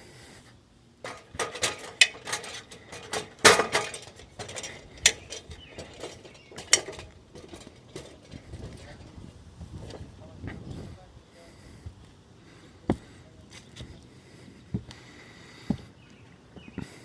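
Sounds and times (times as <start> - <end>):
metal knocks and clanks: 1.0 - 9.0.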